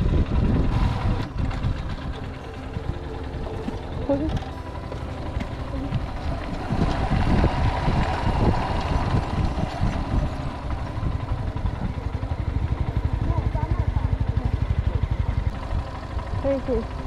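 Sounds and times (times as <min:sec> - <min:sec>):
wind noise on microphone: 0:00.0 - 0:04.6, 0:05.4 - 0:13.4
motorcycle engine running: 0:00.0 - 0:17.0.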